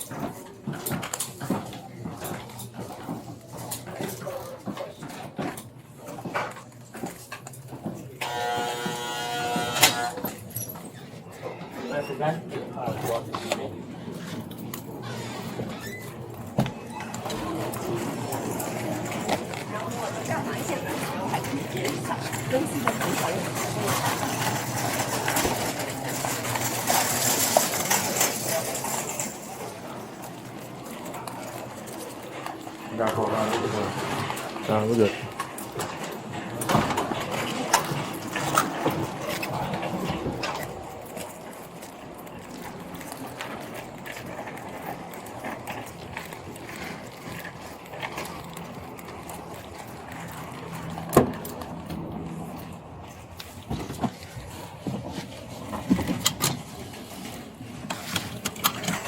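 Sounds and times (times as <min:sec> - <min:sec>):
footsteps: 0:00.0 - 0:59.0
duty gear clattering: 0:13.0 - 0:59.0.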